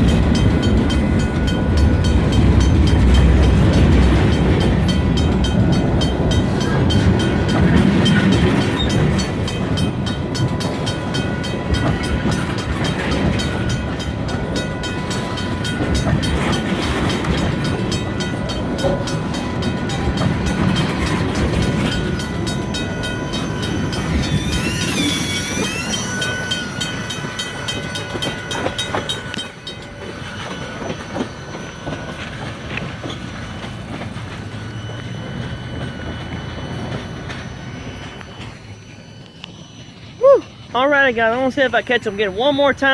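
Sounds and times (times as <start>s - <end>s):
train wheels clicking over rail joints: 0.0s - 39.6s
thin steady wheel whine: 0.0s - 42.9s
wavering squeal: 19.1s - 42.9s.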